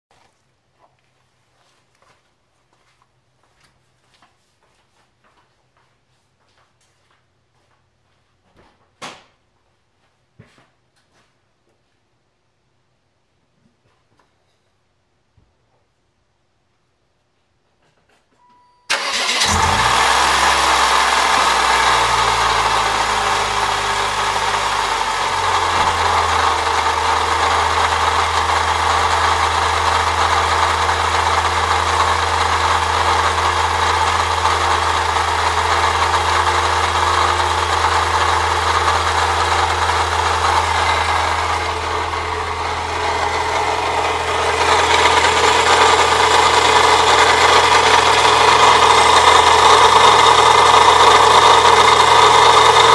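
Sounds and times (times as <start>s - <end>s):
car engine starting and idling: 18.9s - 52.9s.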